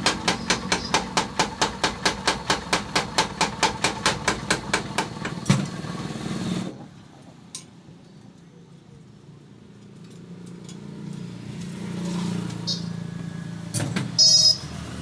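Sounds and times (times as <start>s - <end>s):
power hammer pounding iron: 0.0s - 5.8s.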